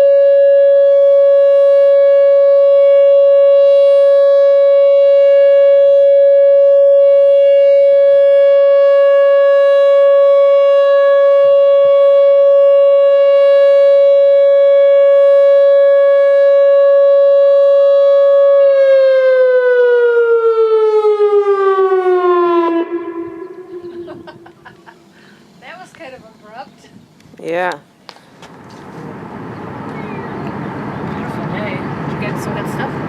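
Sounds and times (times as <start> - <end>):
outdoor warning siren: 0.0 - 25.8.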